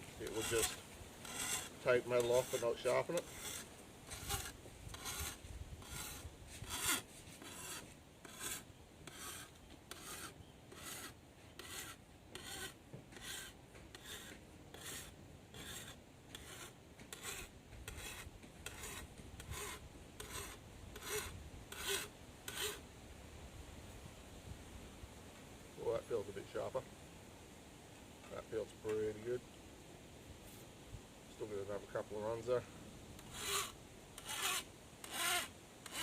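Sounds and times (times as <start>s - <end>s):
file rasping on knife blade: 0.2s - 22.8s, 33.2s - 36.0s.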